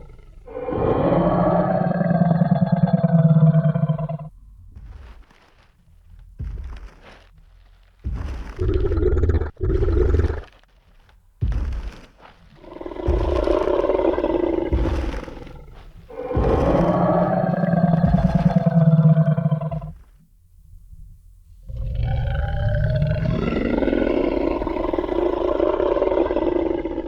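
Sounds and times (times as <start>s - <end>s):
dinosaur roaring and growling: 0.0s - 4.3s, 8.6s - 10.6s, 12.6s - 20.0s, 21.6s - 27.0s
heavy stomp: 6.4s - 9.0s, 11.4s - 20.0s.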